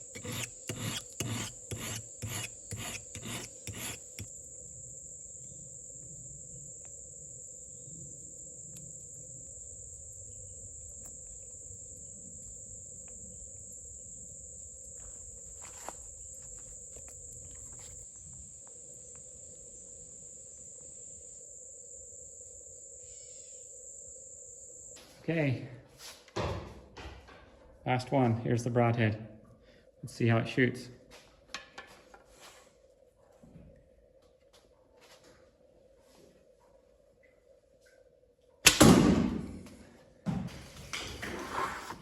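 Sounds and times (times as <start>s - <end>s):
rhythmic rasping filing strokes: 0.0s - 4.3s
crickets and insects droning: 0.0s - 42.0s.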